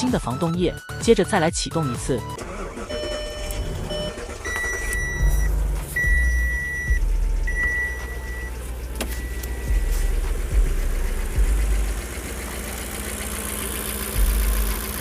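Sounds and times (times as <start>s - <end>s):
car engine running: 2.2s - 15.0s
long electronic beeps: 2.7s - 10.0s.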